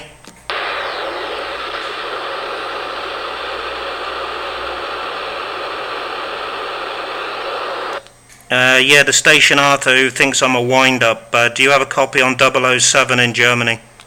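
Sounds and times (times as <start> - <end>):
radio static hiss: 0.0 - 8.0.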